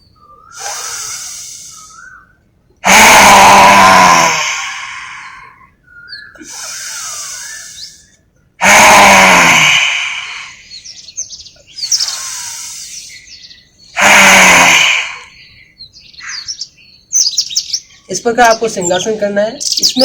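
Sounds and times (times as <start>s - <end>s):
birds chirping: 0.0s - 20.0s
man roaring out breath: 2.8s - 5.6s, 8.6s - 10.7s, 14.0s - 15.4s.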